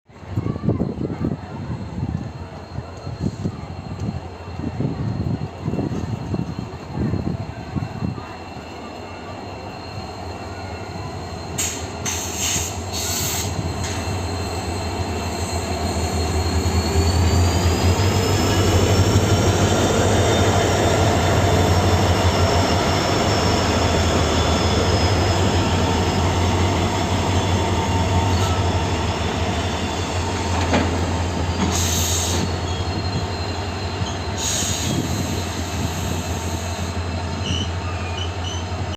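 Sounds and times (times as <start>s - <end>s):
diesel locomotives humming: 0.2s - 38.9s
brief high hissing bursts: 11.4s - 17.3s.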